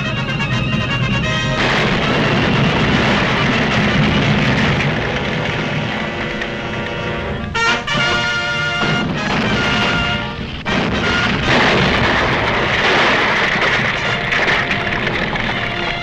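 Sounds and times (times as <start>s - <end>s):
dramatic orchestral cartoon music: 0.0s - 11.7s
low rumble: 0.0s - 16.0s.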